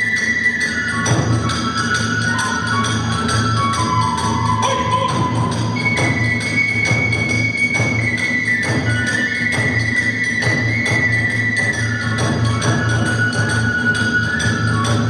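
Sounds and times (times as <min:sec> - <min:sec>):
bamboo flute long notes: 0:00.0 - 0:15.0
small hand cymbals: 0:00.0 - 0:15.0
drum beat: 0:03.0 - 0:13.9.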